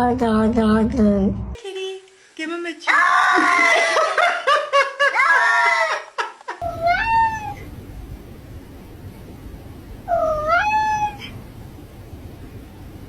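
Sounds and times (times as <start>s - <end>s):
cat meowing: 6.6s - 7.6s, 10.1s - 11.4s.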